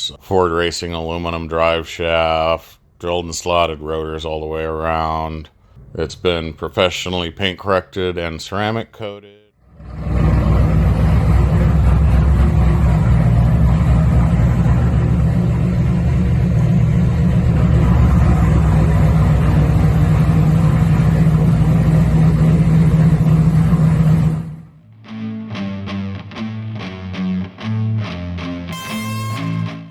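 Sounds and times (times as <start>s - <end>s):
car engine rumbling: 5.8s - 6.6s, 9.7s - 24.8s.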